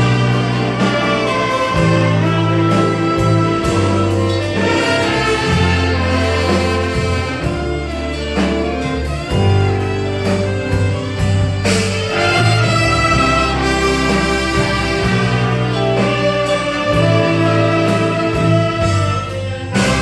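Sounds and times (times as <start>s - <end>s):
orchestra playing: 0.0s - 20.0s.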